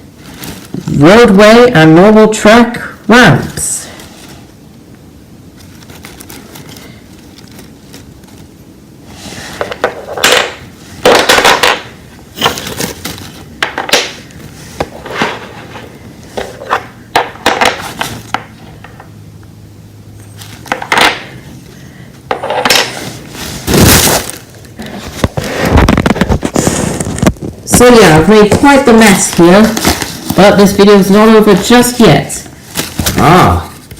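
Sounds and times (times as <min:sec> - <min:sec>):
packaging rustling: 0:00.0 - 0:01.0, 0:05.4 - 0:18.4, 0:22.8 - 0:27.6, 0:28.4 - 0:33.9
plastic toy parts clattering: 0:09.6 - 0:14.2.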